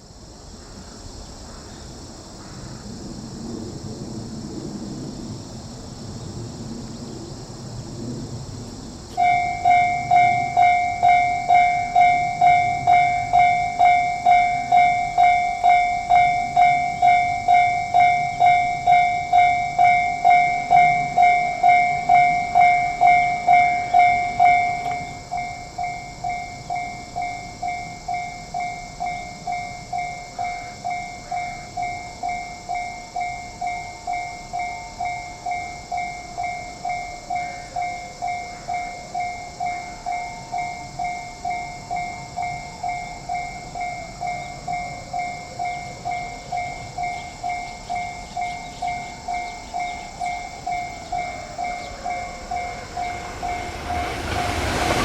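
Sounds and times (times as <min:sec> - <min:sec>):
steady high hiss: 0:40.2 - 0:55.0.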